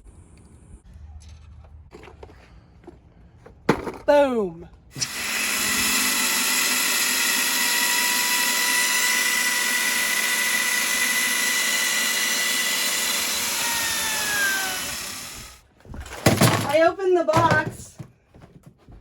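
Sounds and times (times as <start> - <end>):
power cutting tool whining: 5.0 - 15.6.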